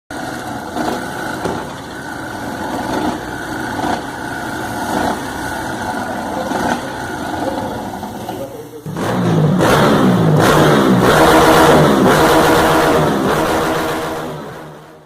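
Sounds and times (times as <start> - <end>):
motorcycle engine idling: 0.1 - 9.6.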